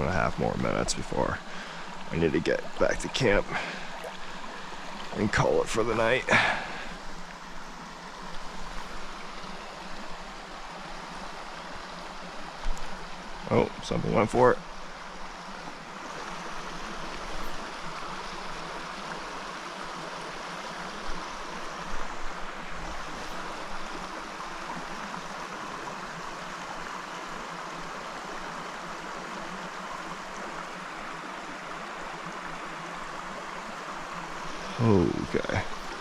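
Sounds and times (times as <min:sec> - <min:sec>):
stream rushing over rocks: 0:00.0 - 0:36.0.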